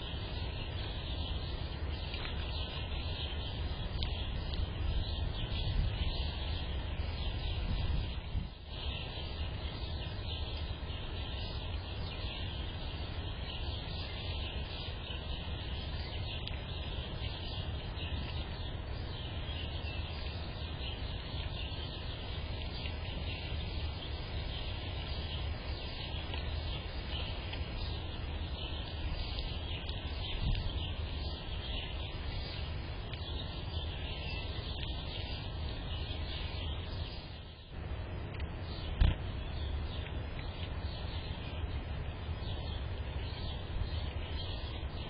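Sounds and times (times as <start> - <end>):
faint bird chirps: 0.0 - 45.0.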